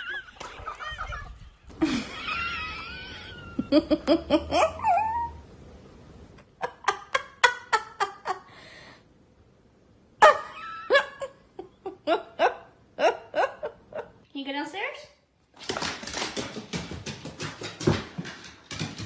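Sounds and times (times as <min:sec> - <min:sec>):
person laughing: 0:00.0 - 0:05.2.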